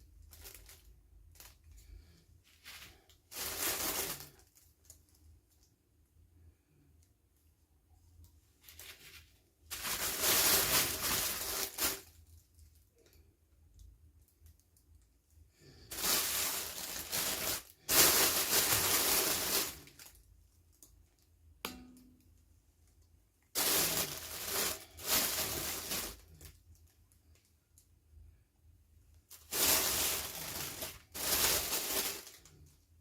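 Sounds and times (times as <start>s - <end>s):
packaging tearing and crinkling: 23.6s - 26.5s, 29.4s - 32.6s.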